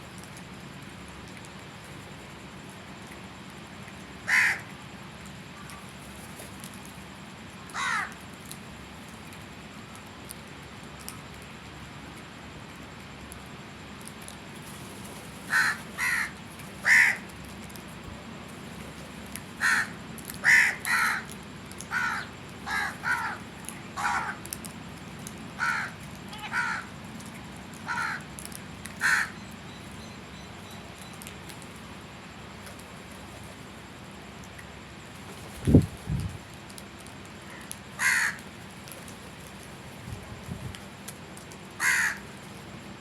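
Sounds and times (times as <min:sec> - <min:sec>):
crow cawing: 0:04.3 - 0:04.7, 0:07.7 - 0:08.2, 0:15.5 - 0:17.3, 0:19.6 - 0:21.3, 0:21.9 - 0:23.4, 0:24.0 - 0:24.4, 0:25.6 - 0:26.9, 0:27.8 - 0:28.3, 0:29.0 - 0:29.4, 0:37.5 - 0:38.4, 0:41.8 - 0:42.2.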